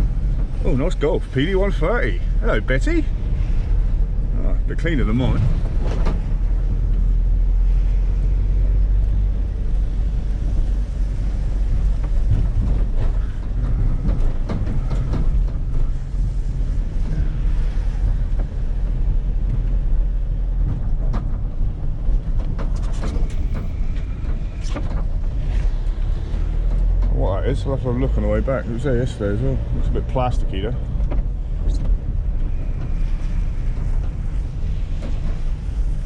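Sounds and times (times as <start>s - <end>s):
vehicle engine and road noise: 0.0s - 36.0s
short rattles and knocks: 11.6s - 18.8s, 19.4s - 27.2s.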